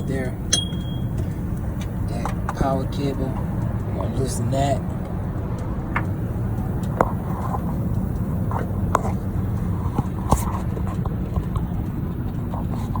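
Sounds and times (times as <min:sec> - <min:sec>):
steady low rumble: 0:00.0 - 0:13.0
socket wrench metallic clinks: 0:00.5 - 0:01.2.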